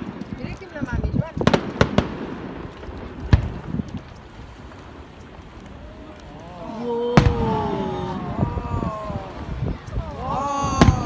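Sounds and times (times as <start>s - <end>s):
voice: 5.8s - 11.0s
firework bang: 7.0s - 11.0s.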